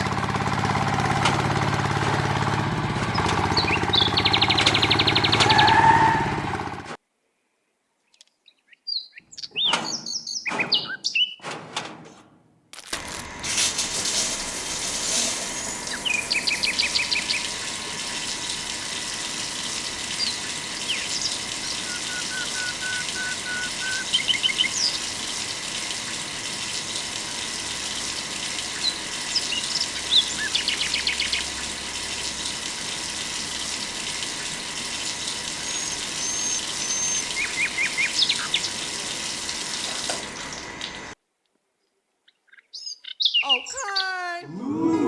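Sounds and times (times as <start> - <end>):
small birds chirping: 3.1 - 5.5, 8.0 - 11.4, 15.6 - 17.8, 20.0 - 25.4, 28.7 - 31.7, 34.4 - 38.8, 41.8 - 44.2
steady rushing hiss: 13.2 - 21.8
rapid high bird trills: 20.1 - 25.4, 35.5 - 38.8.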